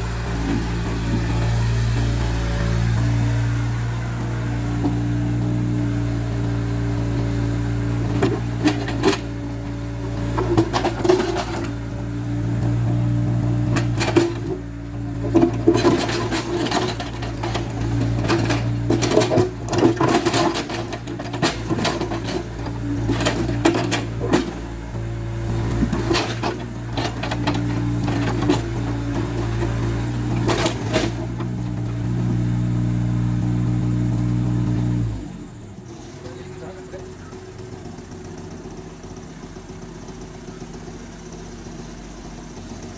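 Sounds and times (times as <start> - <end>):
excavator diesel engine running: 0.0 - 42.9
bucket clanking against stones: 15.2 - 24.6, 25.7 - 31.4.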